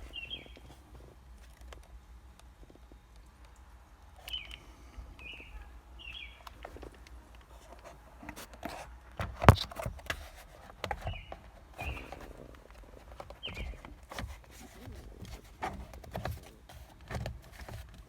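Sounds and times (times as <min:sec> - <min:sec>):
bird chirping: 0:00.0 - 0:00.7, 0:04.2 - 0:06.6, 0:11.0 - 0:12.2, 0:13.3 - 0:13.9.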